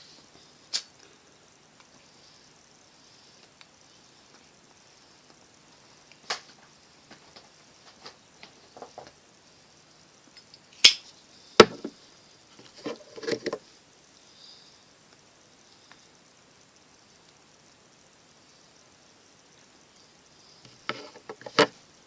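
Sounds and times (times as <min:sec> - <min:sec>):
soft knocks: 0:11.6 - 0:11.9.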